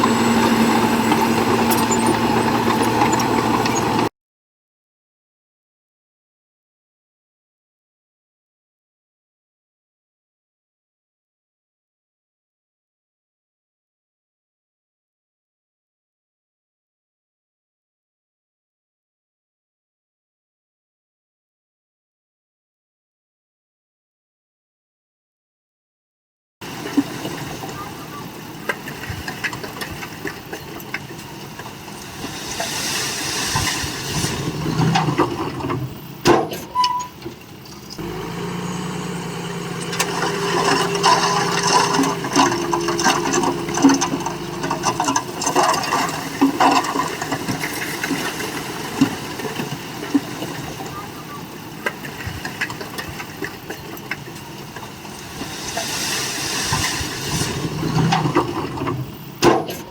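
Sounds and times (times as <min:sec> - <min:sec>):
bulldozer engine under load: 0:00.0 - 0:04.1, 0:26.6 - 0:59.9
steady engine note: 0:00.0 - 0:04.1, 0:38.0 - 0:45.5
metallic clanking and rattling: 0:39.8 - 0:47.9.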